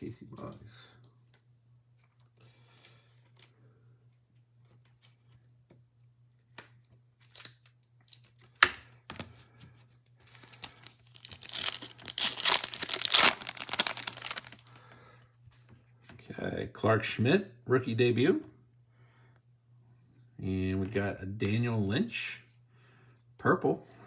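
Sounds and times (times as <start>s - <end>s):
card pack wrapper tearing: 10.3s - 14.8s.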